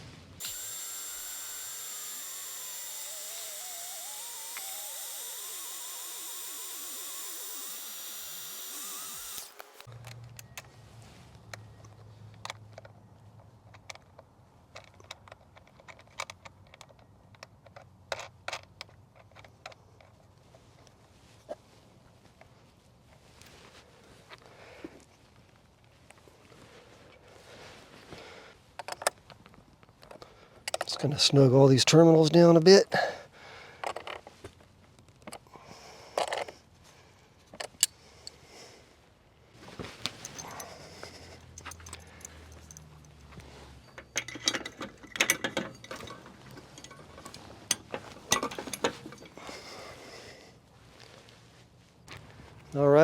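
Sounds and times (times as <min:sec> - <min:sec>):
tools and cable terminals clicking: 0:00.4 - 0:10.7, 0:13.7 - 0:20.2, 0:41.4 - 0:49.4
hand tool metal clicks: 0:41.4 - 0:43.2, 0:43.9 - 0:49.4.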